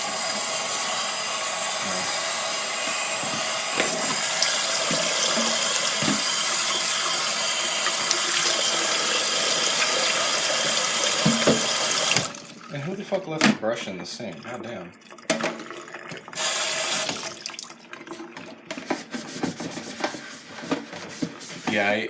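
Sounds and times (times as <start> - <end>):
tap running into plastic bucket: 2.8 - 12.7, 15.2 - 21.9
bucket knocks: 3.2 - 6.5, 10.7 - 12.3.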